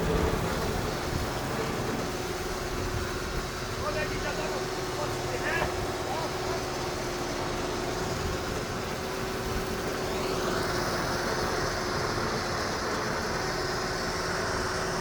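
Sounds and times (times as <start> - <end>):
boat engine running: 0.0 - 15.0
engine whine: 0.0 - 15.0.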